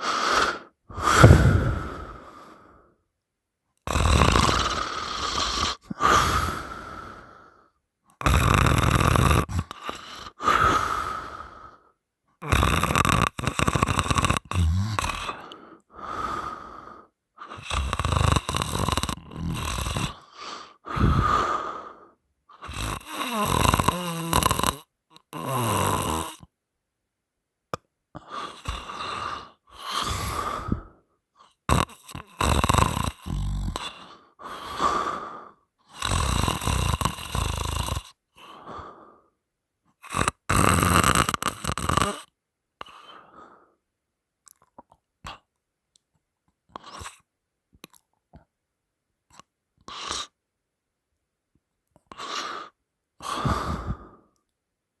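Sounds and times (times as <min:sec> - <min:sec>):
person snoring loudly: 0:00.0 - 0:02.7, 0:03.8 - 0:07.6, 0:08.2 - 0:11.8, 0:12.4 - 0:26.5, 0:28.2 - 0:30.9, 0:31.6 - 0:39.0, 0:40.0 - 0:43.4, 0:52.1 - 0:54.4.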